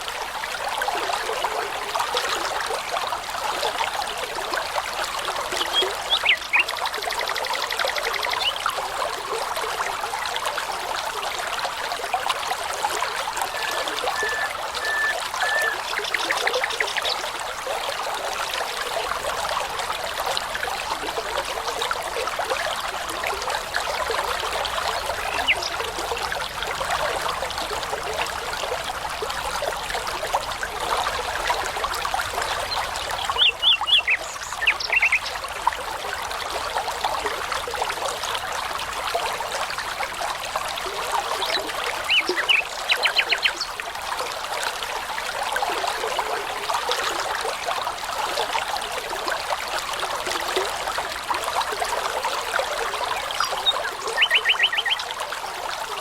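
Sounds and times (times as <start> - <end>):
babbling brook: 0.0 - 56.0
songbirds singing: 5.6 - 6.8, 13.4 - 17.3, 25.0 - 25.8, 32.6 - 35.4, 41.4 - 43.8, 53.3 - 55.1.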